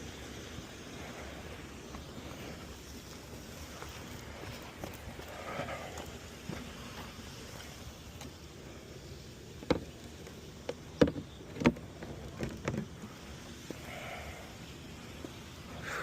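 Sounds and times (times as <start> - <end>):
faint outdoor background noise: 0.0 - 16.0
sharp knocks and clicks: 10.6 - 12.9.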